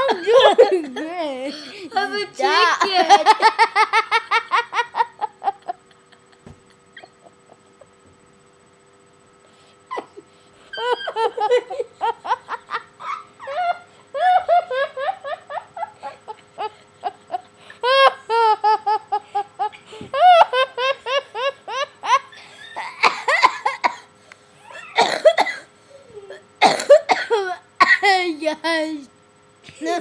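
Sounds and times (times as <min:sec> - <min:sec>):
children laughing: 0:00.0 - 0:08.0, 0:09.9 - 0:23.9.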